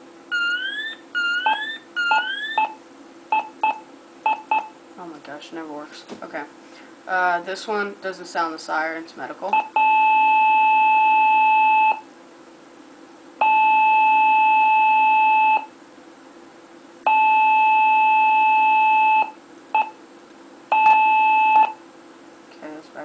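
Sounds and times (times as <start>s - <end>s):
security keypad beeping: 0.3s - 2.7s, 20.7s - 21.8s.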